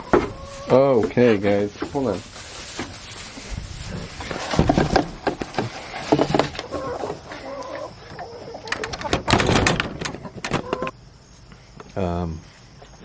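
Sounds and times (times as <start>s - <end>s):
poultry clucking: 0.0s - 11.0s
knocks and clatter: 4.2s - 7.2s, 8.7s - 10.9s.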